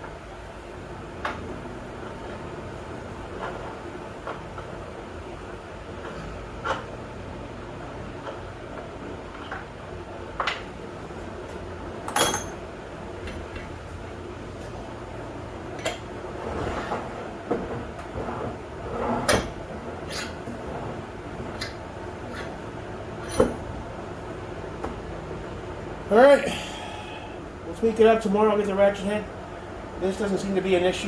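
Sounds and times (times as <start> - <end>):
low steady hum: 0.0 - 31.0
metal tools clanking: 12.1 - 12.6.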